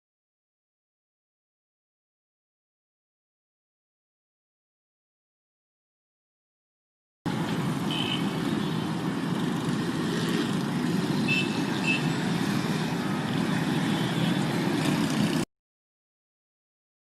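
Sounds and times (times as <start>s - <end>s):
motor vehicle rumble: 7.3s - 15.5s.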